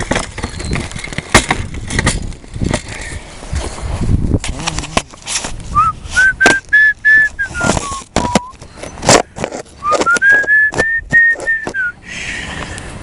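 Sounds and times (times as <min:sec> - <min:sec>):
person whistling a tune: 0:05.7 - 0:08.6, 0:09.8 - 0:12.0.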